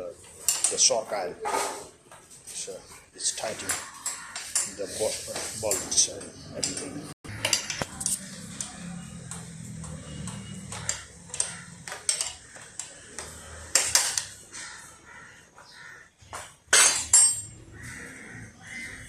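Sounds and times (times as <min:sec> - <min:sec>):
metal tools clinking on metal parts: 0:00.2 - 0:01.9, 0:03.5 - 0:09.4, 0:10.1 - 0:13.0, 0:16.7 - 0:17.6.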